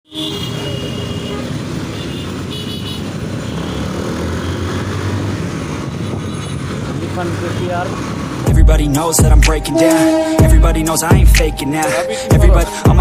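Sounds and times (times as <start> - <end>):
traffic noise: 0.0 - 13.0
vehicle engine droning: 3.1 - 13.0.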